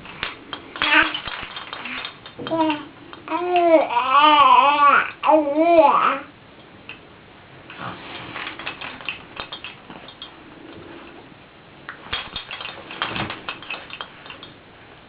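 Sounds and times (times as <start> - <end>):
baby rattles rattling: 0.0 - 5.1, 7.7 - 10.4, 12.0 - 14.6.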